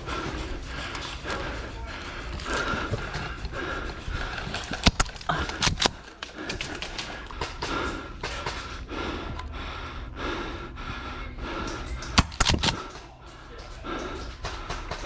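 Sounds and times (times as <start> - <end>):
airsoft gun snaps: 4.6 - 7.4, 11.9 - 13.1.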